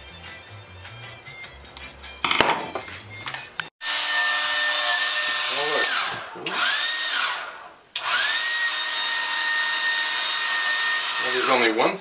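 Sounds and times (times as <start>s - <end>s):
hairdryer running: 3.8s - 11.8s.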